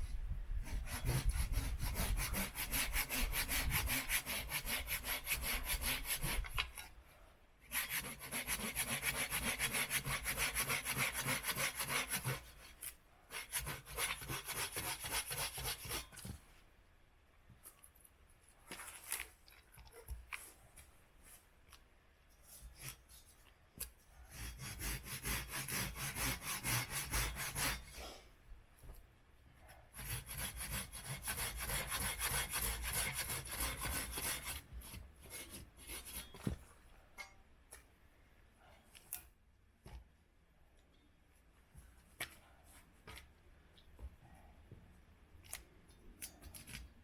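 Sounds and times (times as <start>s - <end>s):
hand saw cutting wood: 0.6s - 6.8s, 7.7s - 16.2s, 24.3s - 28.2s, 30.0s - 36.4s
rustling: 17.4s - 24.3s.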